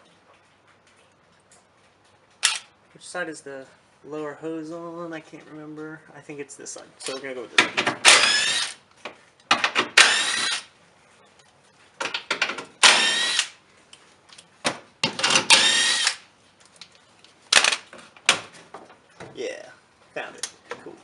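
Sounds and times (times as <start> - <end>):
power tool motor whine: 8.1 - 8.8, 10.0 - 10.7, 12.8 - 13.5, 15.5 - 16.2.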